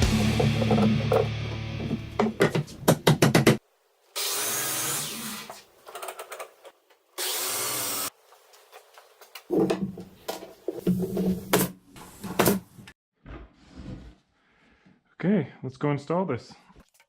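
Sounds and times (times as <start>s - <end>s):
wood knocking and clattering: 0.2s - 3.6s, 8.8s - 11.6s
power tool on wood: 4.2s - 5.6s, 7.2s - 8.1s.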